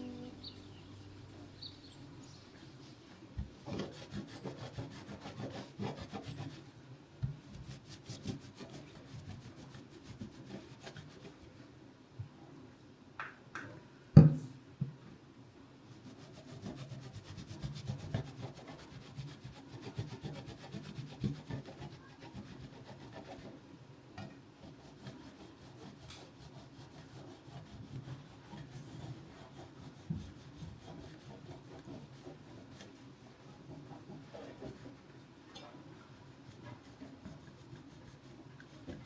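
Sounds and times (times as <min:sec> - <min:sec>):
rubbing or scrubbing strokes: 0:00.0 - 0:06.6, 0:24.6 - 0:35.4, 0:36.0 - 0:39.0.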